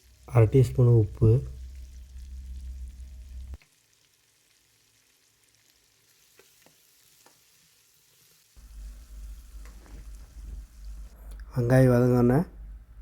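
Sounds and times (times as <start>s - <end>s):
onions sizzling in oil: 0.0s - 11.2s
low rumble: 0.1s - 3.6s, 8.6s - 13.0s.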